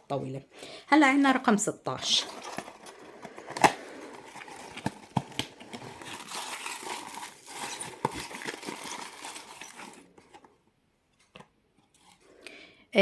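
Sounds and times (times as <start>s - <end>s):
cardboard rustling and crinkling: 2.0s - 12.3s.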